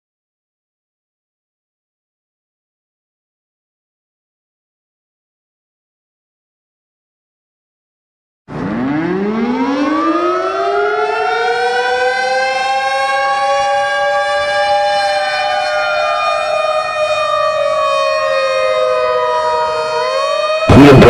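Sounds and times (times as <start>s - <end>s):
civil defense siren wailing: 8.5s - 21.0s.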